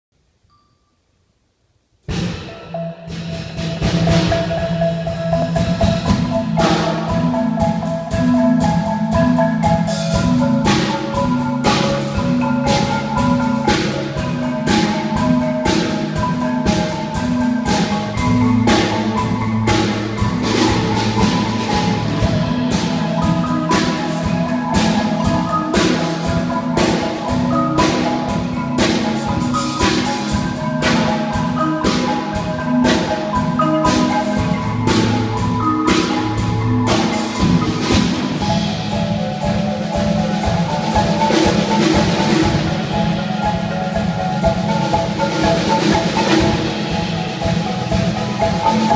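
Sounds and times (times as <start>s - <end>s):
marimbas playing: 2.0s - 48.9s.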